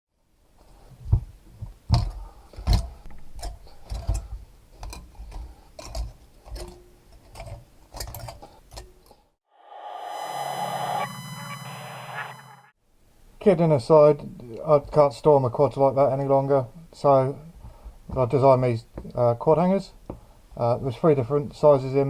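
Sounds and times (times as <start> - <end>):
steady honking tone: 9.6 - 12.7.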